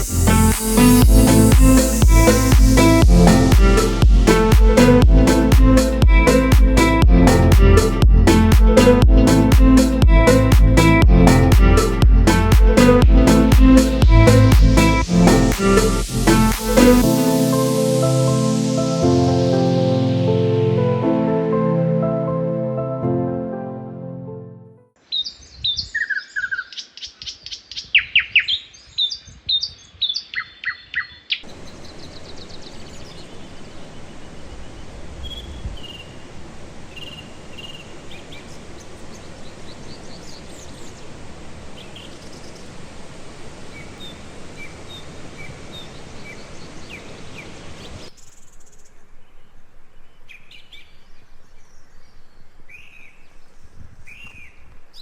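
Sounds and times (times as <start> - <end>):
steady rushing hiss: 0.0 - 20.5, 31.5 - 48.1
songbirds chirping and trilling: 25.0 - 55.0.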